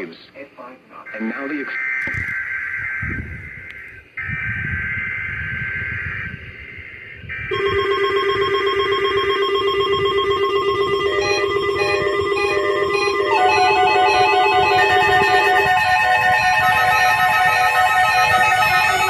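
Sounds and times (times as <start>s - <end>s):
pulsing alarm beeps: 1.1s - 19.0s
buzzy two-tone digital chirp: 3.0s - 19.0s
steady alert tone: 7.5s - 19.0s.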